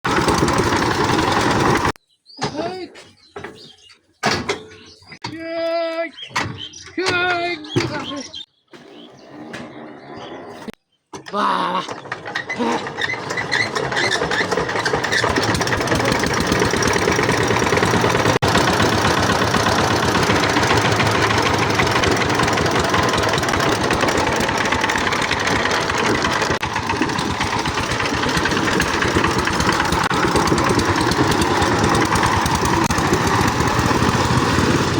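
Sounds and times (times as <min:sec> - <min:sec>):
tiller engine running: 0:00.0 - 0:02.0, 0:11.9 - 0:34.9.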